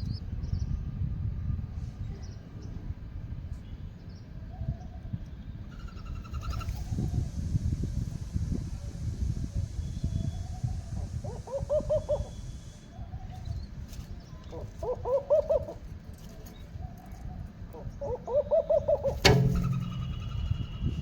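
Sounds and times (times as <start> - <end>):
bird calling: 11.2 - 12.8, 14.3 - 15.8, 17.8 - 21.0
sharp knock: 19.1 - 20.9
low rumble: 19.3 - 21.0.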